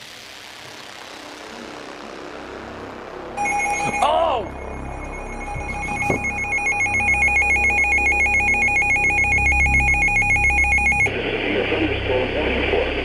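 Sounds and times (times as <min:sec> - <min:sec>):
radio hiss: 0:00.0 - 0:03.1
warbling electronic alert tone: 0:03.4 - 0:11.1.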